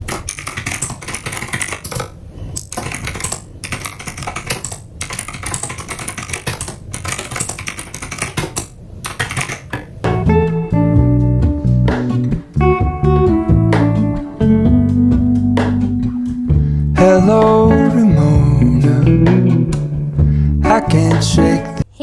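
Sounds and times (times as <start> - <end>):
typing on mechanical keyboard: 0.0 - 9.9.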